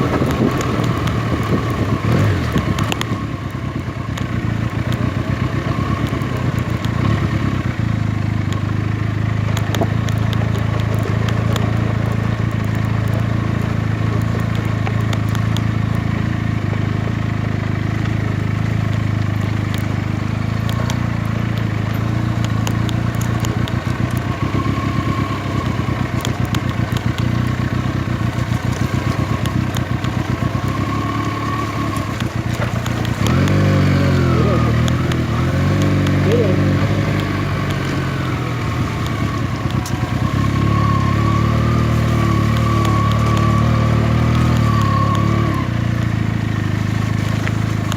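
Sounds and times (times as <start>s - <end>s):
motorcycle engine running: 0.0s - 47.9s
person speaking: 33.6s - 38.4s.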